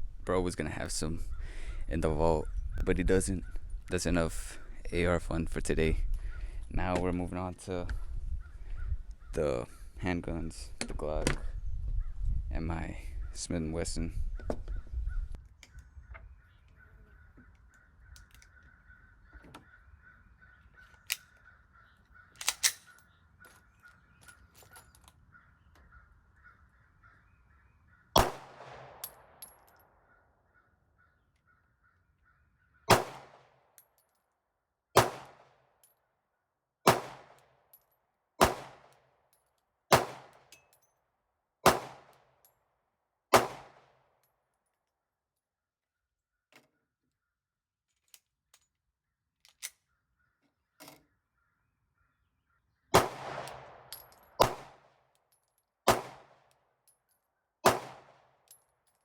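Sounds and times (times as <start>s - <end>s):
handgun shots: 28.2s - 29.6s, 32.9s - 33.5s, 35.0s - 35.5s, 36.9s - 37.4s, 38.4s - 39.0s, 39.9s - 40.5s, 41.6s - 42.2s, 43.3s - 43.8s, 53.0s - 54.8s, 55.9s - 56.4s, 57.6s - 58.2s.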